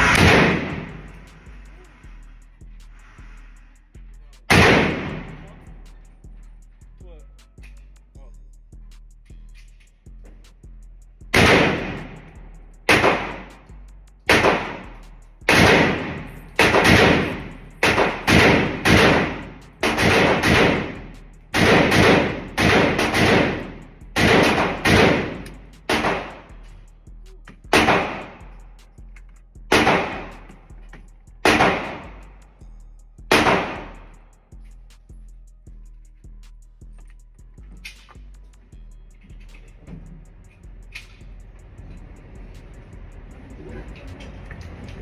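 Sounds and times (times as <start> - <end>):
gunshots with echo: 0.0 - 1.1, 4.5 - 5.7, 11.4 - 12.3, 12.9 - 13.6, 14.3 - 26.5, 27.7 - 28.5, 29.7 - 30.5, 31.5 - 32.2, 33.3 - 34.1.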